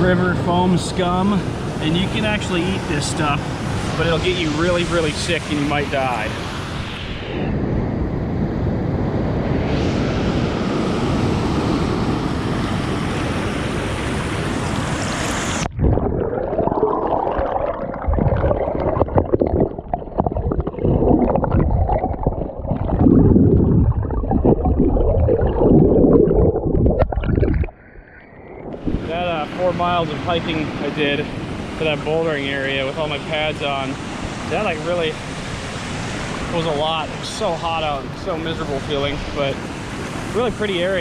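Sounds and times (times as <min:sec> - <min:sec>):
water sloshing and gurgling: 0:14.0 - 0:41.0
river water rushing: 0:28.8 - 0:41.0.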